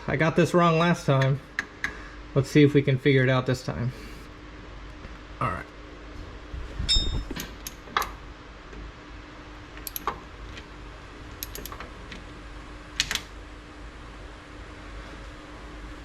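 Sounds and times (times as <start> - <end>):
metal parts and tools clicking: 11.4 - 11.8.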